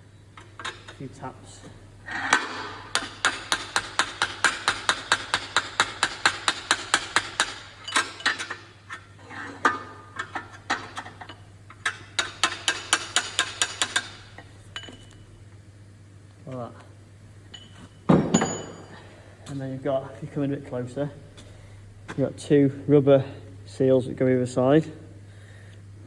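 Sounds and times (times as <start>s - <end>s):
hammer tapping metal drift: 2.4s - 8.2s.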